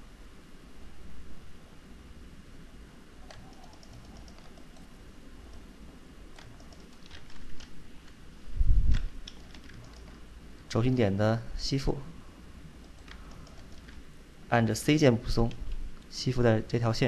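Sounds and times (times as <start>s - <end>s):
faint low hum: 0.0s - 17.0s
computer keyboard clicks: 3.2s - 4.9s, 6.4s - 8.2s, 8.9s - 10.8s, 12.8s - 14.0s
mouse clicks: 3.2s - 4.9s, 6.4s - 8.2s, 8.9s - 10.2s, 12.8s - 14.0s.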